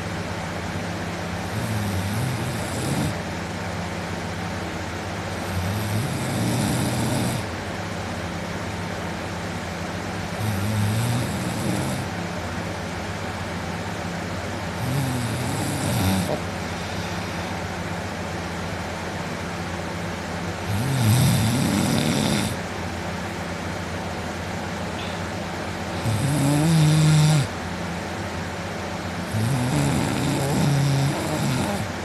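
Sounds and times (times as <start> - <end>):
steady low hum: 0.0 - 32.0
man snoring loudly: 1.4 - 3.2, 5.3 - 7.5, 10.4 - 12.1, 14.8 - 17.6, 20.6 - 22.6, 25.9 - 27.5, 29.2 - 31.9.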